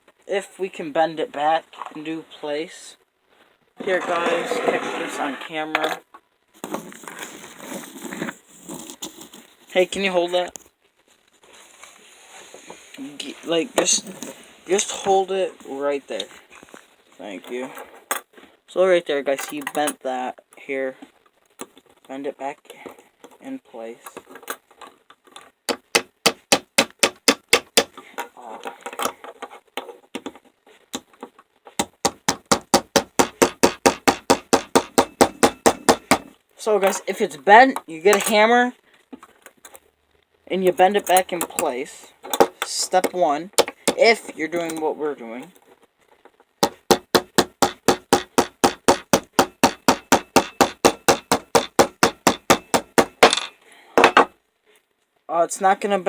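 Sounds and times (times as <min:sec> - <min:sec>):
hammer striking metal: 0:46.6 - 0:54.3.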